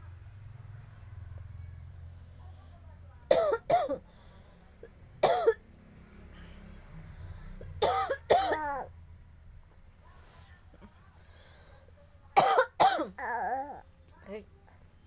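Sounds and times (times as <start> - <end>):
baby making cough sounds: 3.3 - 4.0, 5.2 - 5.6, 7.8 - 8.9, 12.4 - 13.4.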